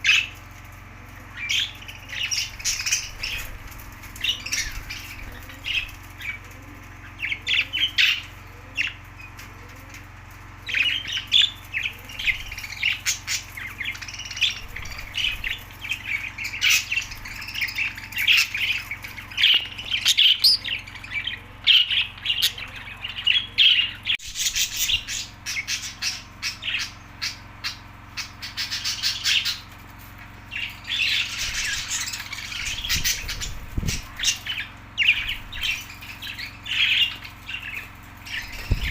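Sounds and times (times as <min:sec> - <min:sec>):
budgerigars chattering: 0:10.7 - 0:29.7, 0:30.4 - 0:38.9.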